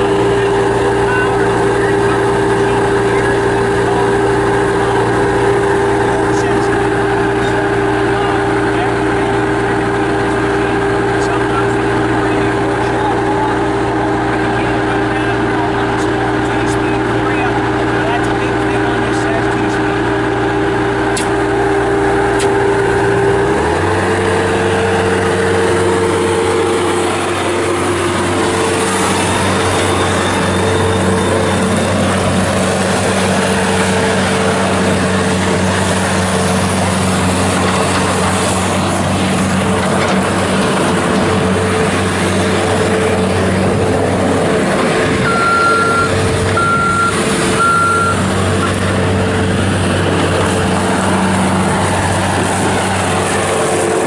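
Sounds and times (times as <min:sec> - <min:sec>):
diesel engine running: 0:00.0 - 0:54.0
backup alarm beeping: 0:45.2 - 0:48.2.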